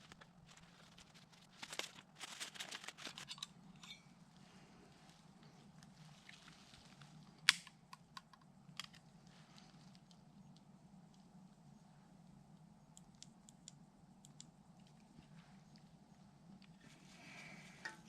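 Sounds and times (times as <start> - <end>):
rustling and crinkling handling: 0.0 - 7.4, 8.8 - 11.4
faint steady hum: 0.0 - 18.0.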